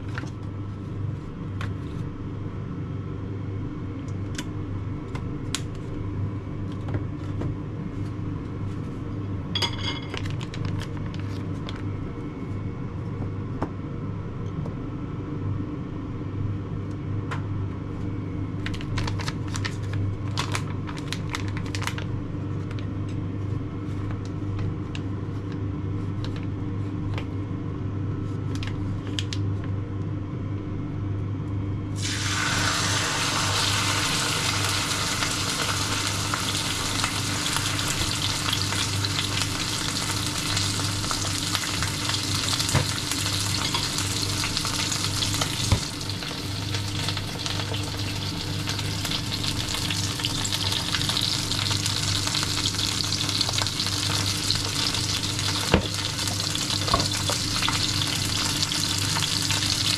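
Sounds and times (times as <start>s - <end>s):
food sizzling in a pan: 32.0s - 59.9s.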